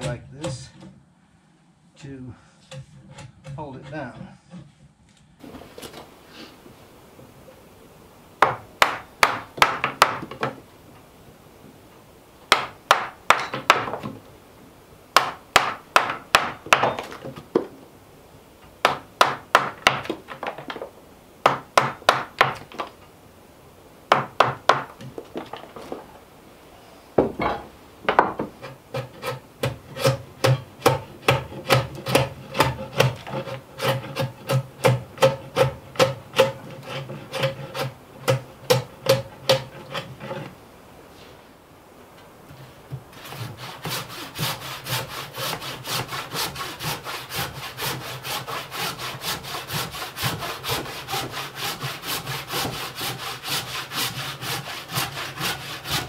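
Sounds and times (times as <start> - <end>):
hand tool strokes on wood: 2.0 - 6.7, 28.4 - 41.6, 42.5 - 56.0.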